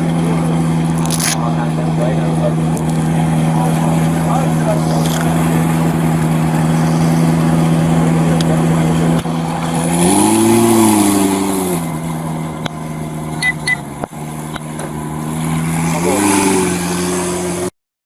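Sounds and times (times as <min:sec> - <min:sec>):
vehicle engine running: 0:00.0 - 0:17.7
short high beeps: 0:13.4 - 0:13.9.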